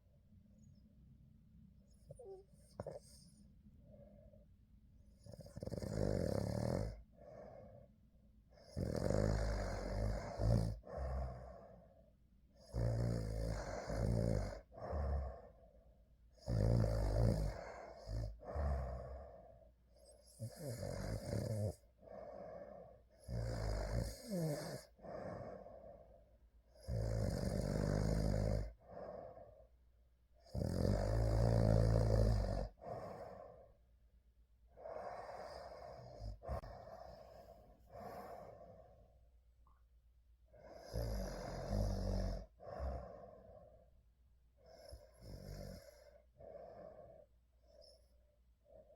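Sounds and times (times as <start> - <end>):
person snoring: 5.3 - 7.0, 8.7 - 11.7, 12.7 - 15.5, 16.4 - 19.3, 23.2 - 25.9, 26.8 - 29.4, 30.5 - 33.5, 40.8 - 43.5.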